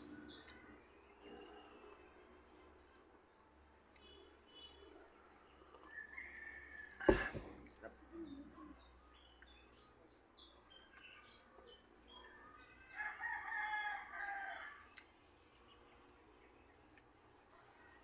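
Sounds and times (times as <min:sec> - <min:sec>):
faint bird chirps: 0:03.9 - 0:07.1, 0:07.8 - 0:13.4
rooster crowing: 0:05.9 - 0:07.2, 0:12.9 - 0:14.8.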